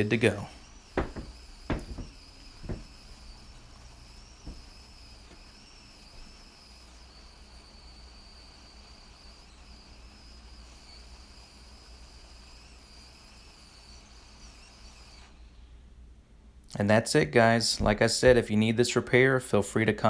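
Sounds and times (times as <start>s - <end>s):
high-pitched electrical whine: 0.0s - 15.6s
low mains hum: 0.0s - 20.0s.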